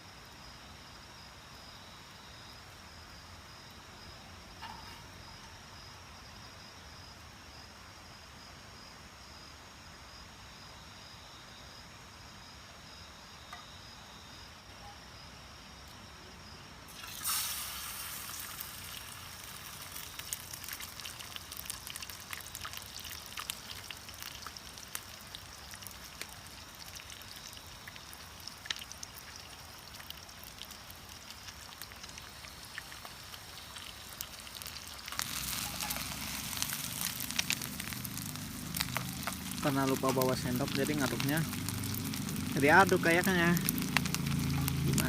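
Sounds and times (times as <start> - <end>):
crickets chirping: 0.0 - 45.0
egg frying in hot oil: 16.9 - 45.0.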